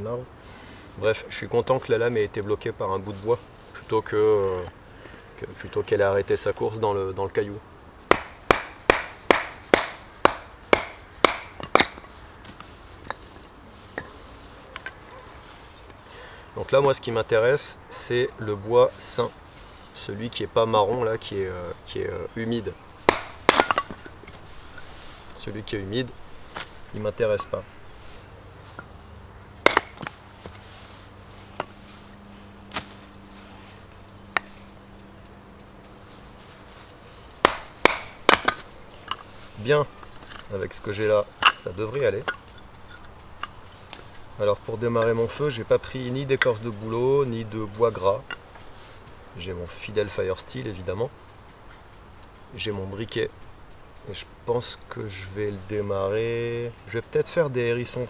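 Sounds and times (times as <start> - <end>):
firewood knocking together: 8.1 - 14.1, 23.0 - 24.4, 29.6 - 30.6, 37.4 - 39.3.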